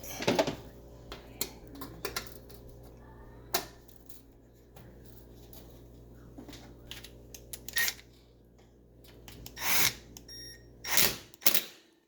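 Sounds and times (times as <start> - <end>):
screwdriver clicks and scrapes: 7.4 - 8.0.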